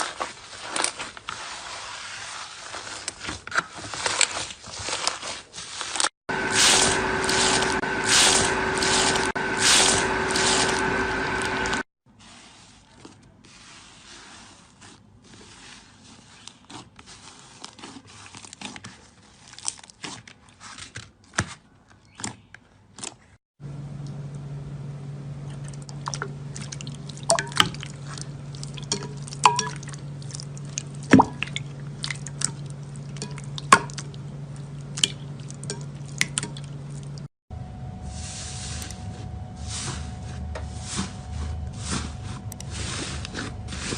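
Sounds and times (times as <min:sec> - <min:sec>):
steady low hum: 0:06.3 - 0:11.8, 0:23.6 - 0:43.9.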